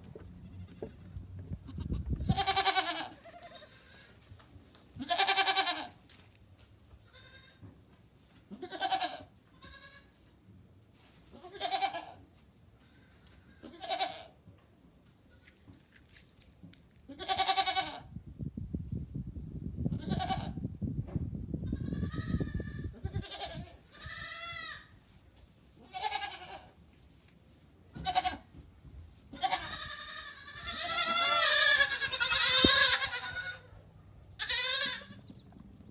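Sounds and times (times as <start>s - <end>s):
goat bleating: 0.4s - 4.2s, 5.0s - 6.0s, 7.0s - 7.6s, 8.5s - 10.2s, 11.3s - 12.2s, 12.8s - 14.3s, 17.1s - 18.0s, 20.0s - 20.6s, 21.6s - 24.9s, 25.8s - 26.8s, 27.9s - 28.5s, 29.3s - 35.3s.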